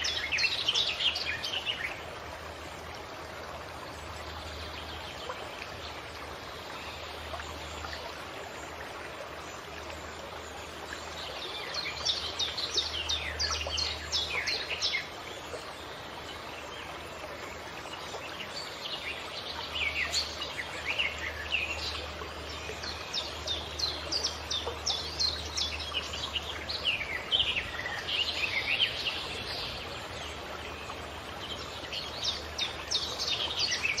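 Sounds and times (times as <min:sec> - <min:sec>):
stream flowing: 0:00.0 - 0:34.0
songbirds singing: 0:09.6 - 0:34.0.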